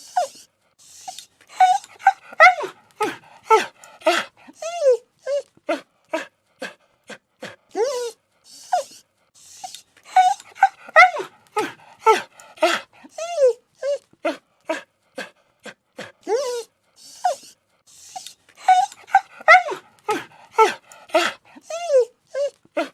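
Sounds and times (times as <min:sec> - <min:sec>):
puppy whimpering: 0:01.1 - 0:05.5, 0:09.6 - 0:14.1, 0:16.3 - 0:17.5, 0:18.1 - 0:22.9.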